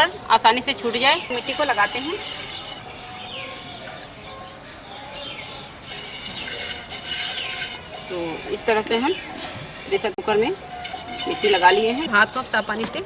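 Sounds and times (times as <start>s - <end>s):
hand rubbing wet clay on metal: 1.3s - 13.0s.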